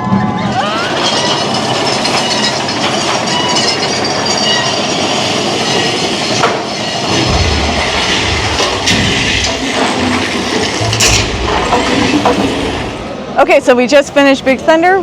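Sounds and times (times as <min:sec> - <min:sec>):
roller coaster wheels rattling: 0:00.0 - 0:15.0
faint high squealing: 0:00.3 - 0:02.6
deep rumble: 0:07.1 - 0:13.1.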